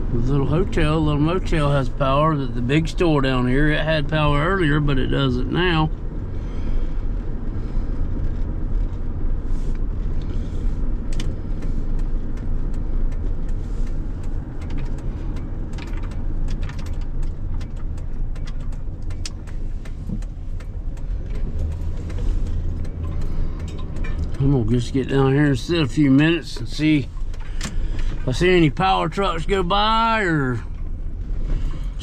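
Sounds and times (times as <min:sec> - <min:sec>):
truck rumbling inside cab: 0:00.0 - 0:32.0
light ticks and taps: 0:11.0 - 0:24.9.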